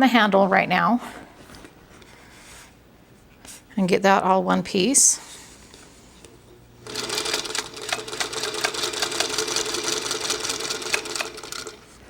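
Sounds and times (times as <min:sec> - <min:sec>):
electric sewing machine stitching: 0:06.8 - 0:12.0.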